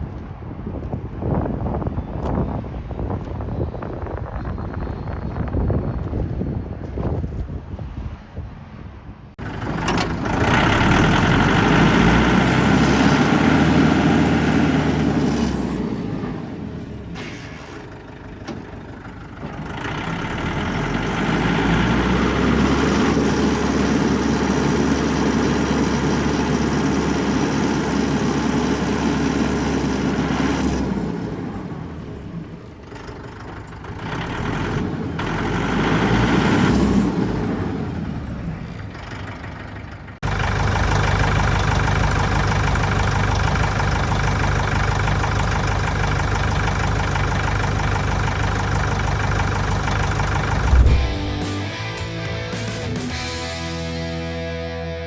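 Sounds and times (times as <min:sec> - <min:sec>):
tractor diesel engine revving: 0:09.4 - 0:53.7.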